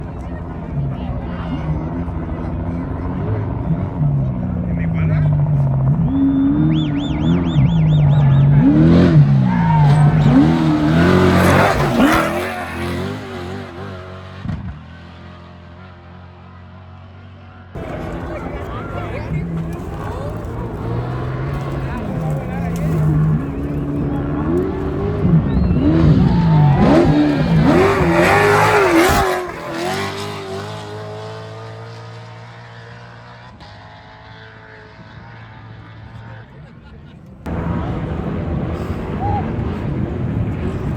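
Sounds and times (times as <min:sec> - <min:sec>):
race vehicle engine revving past: 0:05.3 - 0:14.5, 0:17.8 - 0:36.5.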